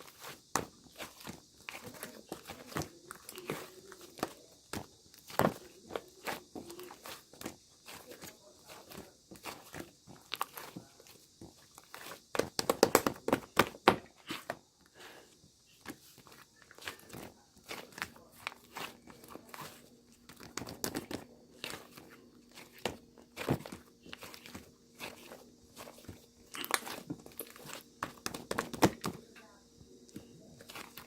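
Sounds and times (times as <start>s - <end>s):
slime squished by hand: 16.7s - 29.2s.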